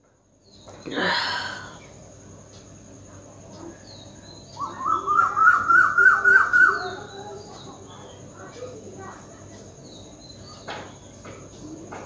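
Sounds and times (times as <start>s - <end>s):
person sneezing: 0.9s - 1.8s.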